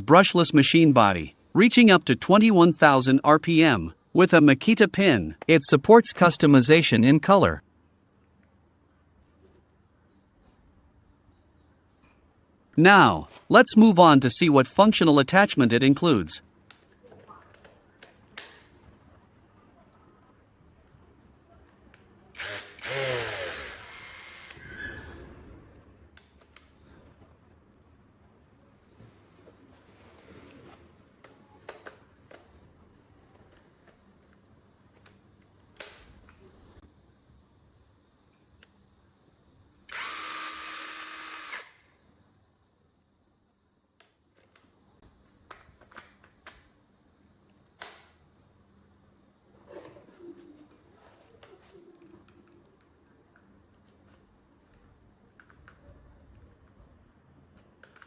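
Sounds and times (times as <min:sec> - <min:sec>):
power tool motor running: 0:22.4 - 0:24.6, 0:39.9 - 0:41.8.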